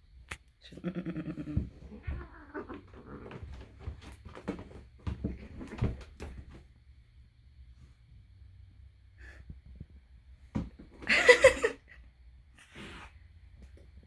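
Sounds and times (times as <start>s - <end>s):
cats calling: 0.8s - 3.3s
knocks and scuffling: 1.4s - 6.8s.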